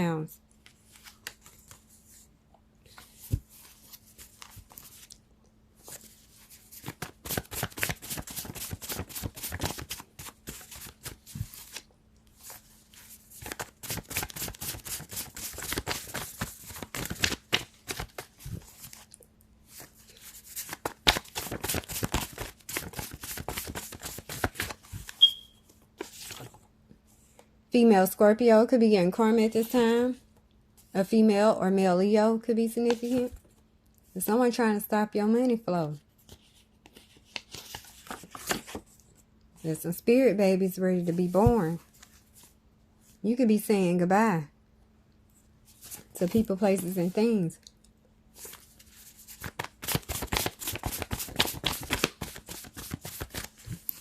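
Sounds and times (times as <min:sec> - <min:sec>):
deck of cards shuffling: 0:05.8 - 0:11.8, 0:12.4 - 0:19.1, 0:19.7 - 0:25.4, 0:48.4 - 0:54.0.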